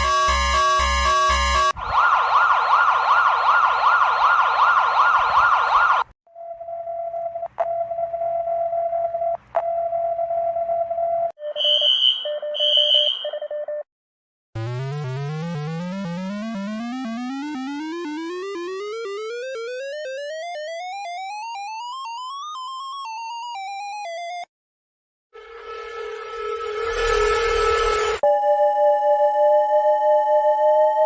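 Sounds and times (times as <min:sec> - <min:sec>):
warbling siren tone: 0:00.0 - 0:08.5, 0:25.4 - 0:31.0.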